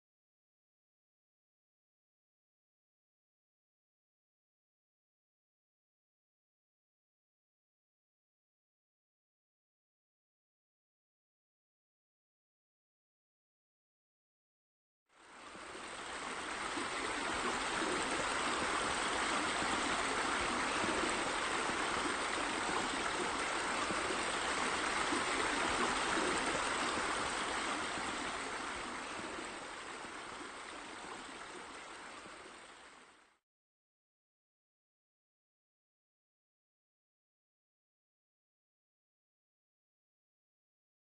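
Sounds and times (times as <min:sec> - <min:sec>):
running water rushing: 0:15.2 - 0:33.4.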